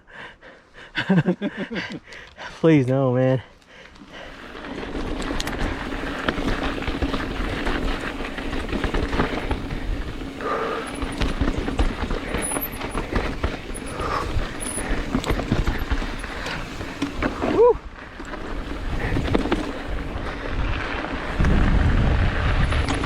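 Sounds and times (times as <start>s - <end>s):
bike tyres rolling over rock: 3.3s - 23.0s
bike rattling and knocking: 4.0s - 23.0s
wind rumbling on microphone: 4.6s - 23.0s.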